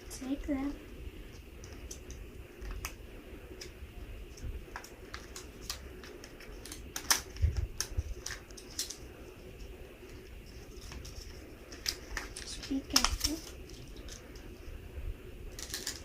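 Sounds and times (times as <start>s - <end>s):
plastic toy parts clicking: 4.8s - 9.0s, 15.6s - 16.0s.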